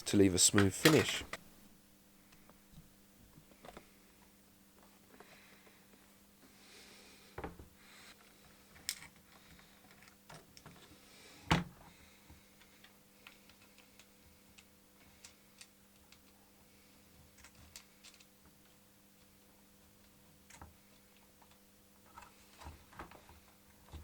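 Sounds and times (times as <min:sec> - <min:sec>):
plastic parts clicking and tapping: 0:00.6 - 0:01.4, 0:17.4 - 0:18.3.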